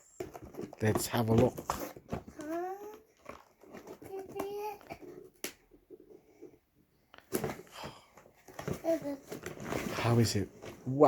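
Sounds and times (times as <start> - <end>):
toy box handling noise: 0.0 - 6.6, 7.2 - 11.0
child vocalizing: 2.4 - 3.1, 4.1 - 5.0.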